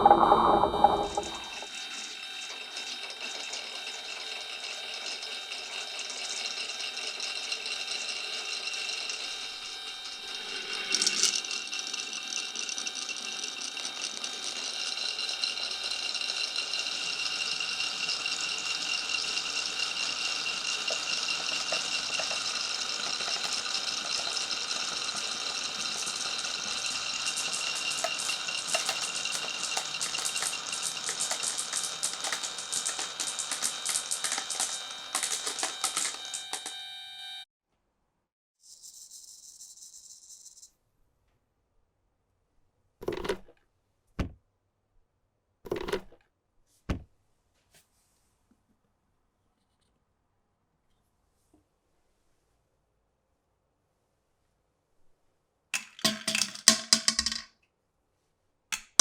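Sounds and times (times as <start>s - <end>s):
marbles rolling on marble run: 0.0s - 36.7s, 55.8s - 57.5s
marbles clacking together: 10.2s - 36.6s, 55.8s - 57.5s.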